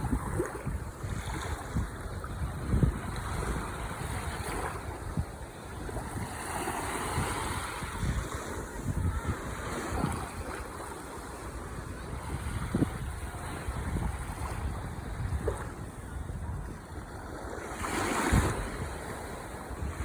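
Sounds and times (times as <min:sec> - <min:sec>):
ocean waves breaking on shore: 0:00.0 - 0:20.0
wind buffeting microphone: 0:00.0 - 0:20.0.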